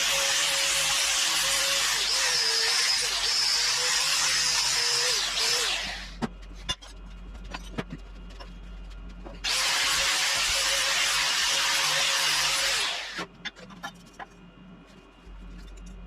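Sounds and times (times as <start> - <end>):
power tool running: 0.0 - 6.2, 9.4 - 13.3.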